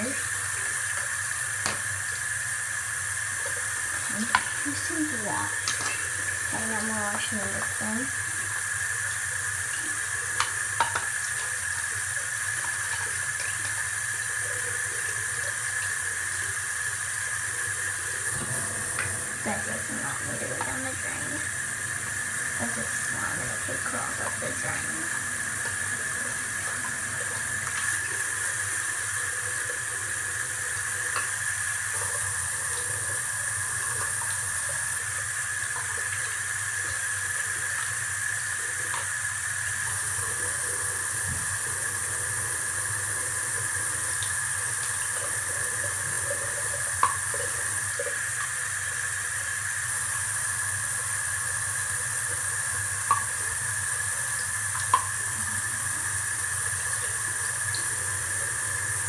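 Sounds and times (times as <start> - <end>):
tap water running into sink: 0.0 - 59.0
items knocking against sink: 1.6 - 2.0.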